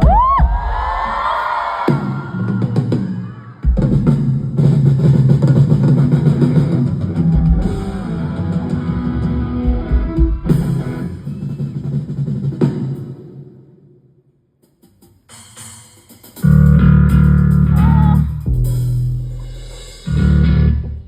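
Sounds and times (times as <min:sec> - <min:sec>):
rock band playing: 0:03.7 - 0:12.8, 0:16.4 - 0:21.0.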